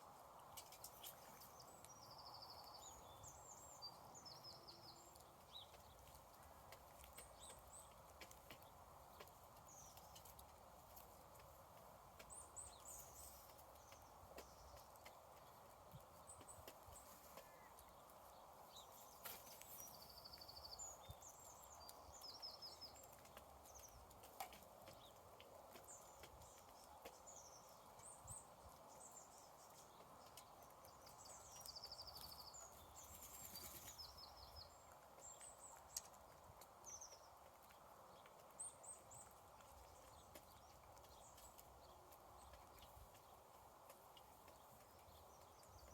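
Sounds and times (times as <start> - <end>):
small birds chirping: 0.0 - 45.9.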